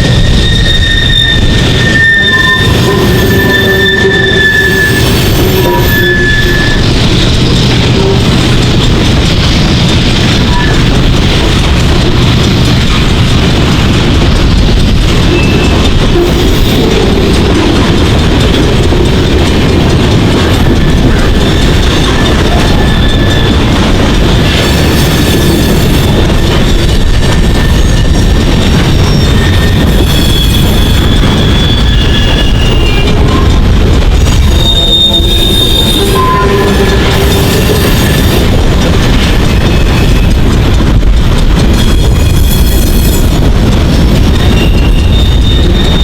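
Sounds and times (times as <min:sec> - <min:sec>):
high wheel squeals: 0:00.0 - 0:07.1, 0:15.2 - 0:17.5, 0:20.6 - 0:23.7, 0:24.4 - 0:26.8, 0:27.4 - 0:33.6, 0:34.2 - 0:38.5, 0:44.4 - 0:46.0
train wheels rumbling on rails: 0:00.0 - 0:46.0
wheels clacking over rail joints: 0:00.0 - 0:46.0.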